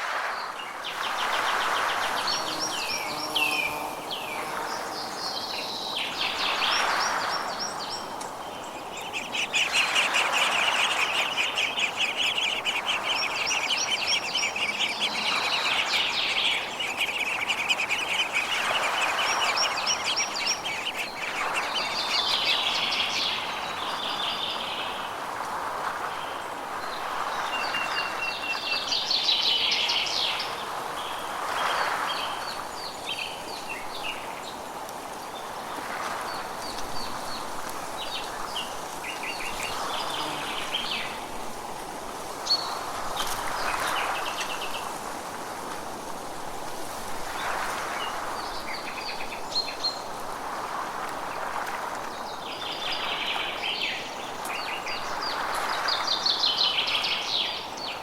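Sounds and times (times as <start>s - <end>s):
background hiss: 0.0s - 27.9s, 28.7s - 58.0s
songbirds whistling: 6.0s - 23.4s
buzzy bird trill: 8.7s - 23.2s.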